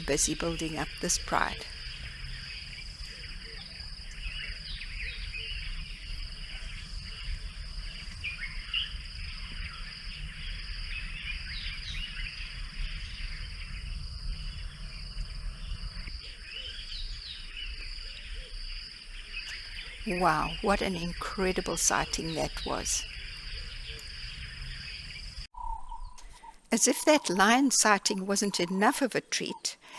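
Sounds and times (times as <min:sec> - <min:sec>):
bird chirps: 0:00.0 - 0:29.9
low rumble: 0:01.6 - 0:17.4.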